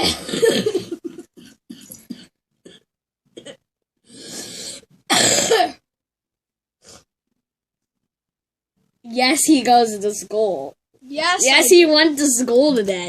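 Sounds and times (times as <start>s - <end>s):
person coughing: 0.0s - 3.6s, 5.1s - 5.8s.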